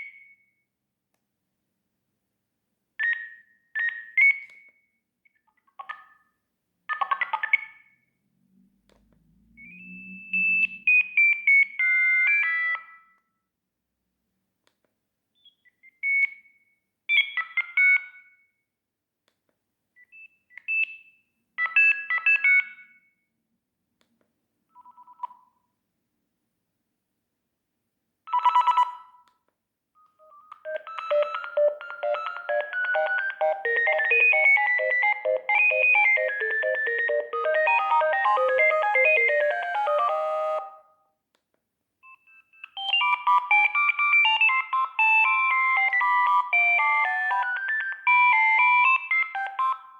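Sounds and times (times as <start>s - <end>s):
phone ringtone melody: 30.6s - 40.8s, 42.8s - 49.9s
electronic alert tones: 30.7s - 40.8s.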